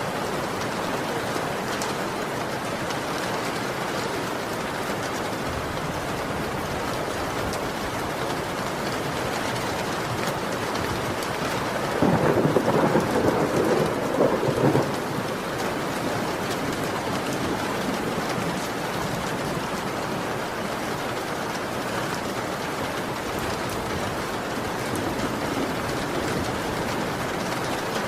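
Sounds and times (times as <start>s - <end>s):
heavy rain: 0.0s - 28.0s
thunder rolling: 11.0s - 18.7s, 23.4s - 28.0s.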